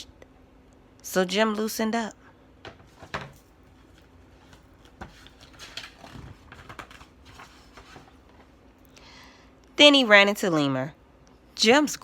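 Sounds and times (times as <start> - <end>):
paper pages turning: 2.9 - 8.6.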